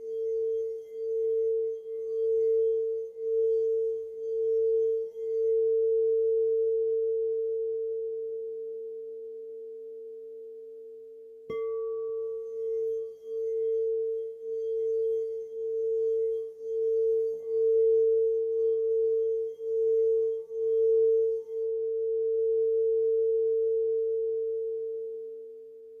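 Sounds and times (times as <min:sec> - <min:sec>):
singing bowl ringing: 0:00.0 - 0:26.0
singing bowl struck: 0:11.5 - 0:21.8.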